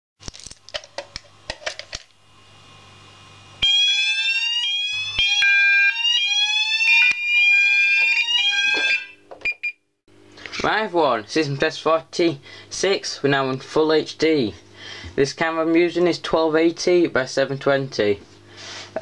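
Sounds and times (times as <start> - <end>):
fire alarm sweep tones: 3.6 - 9.8.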